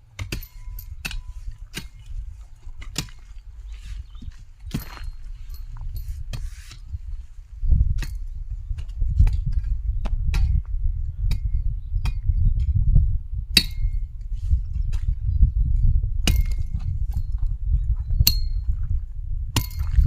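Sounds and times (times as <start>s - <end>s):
hoe striking dry clay soil: 0.0s - 12.8s, 13.6s - 15.2s, 15.8s - 17.6s, 18.2s - 20.0s
steady low rumble: 0.0s - 20.0s.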